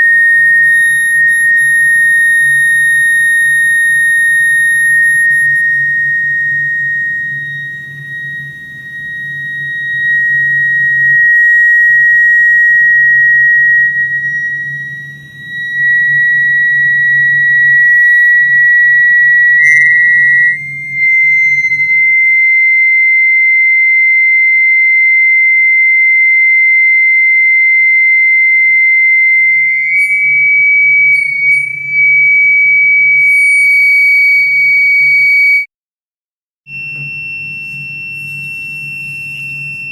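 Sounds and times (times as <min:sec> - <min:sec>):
low hum: 0:00.0 - 0:22.6
high-pitched electronic test tone: 0:00.0 - 0:35.7, 0:36.7 - 0:39.9.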